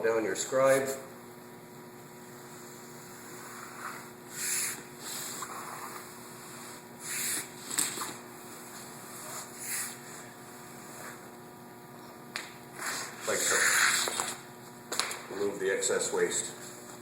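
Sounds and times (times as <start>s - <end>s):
blade scraping vinyl: 12.8s - 14.4s.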